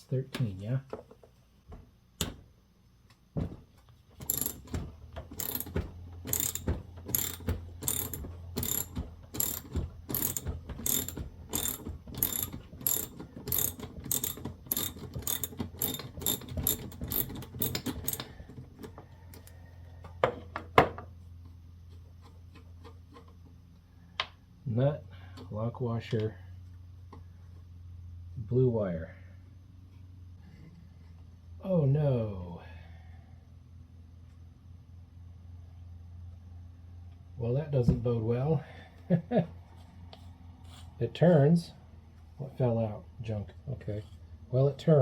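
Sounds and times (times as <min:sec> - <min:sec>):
ratchet wrench clicking: 0:04.2 - 0:04.8, 0:05.4 - 0:18.4.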